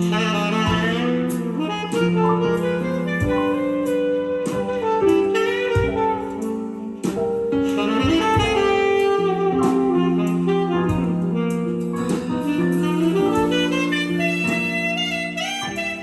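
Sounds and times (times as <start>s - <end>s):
instrumental jazz ballad over speakers: 0.0s - 16.0s.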